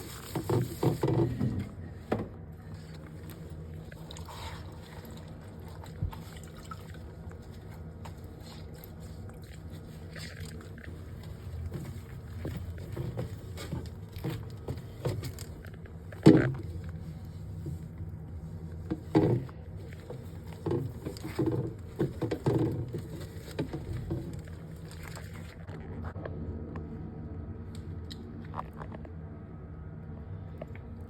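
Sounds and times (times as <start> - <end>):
items clattering and knocking: 0.0 - 2.4, 10.2 - 17.0, 18.8 - 26.2
steady low hum: 0.0 - 31.0.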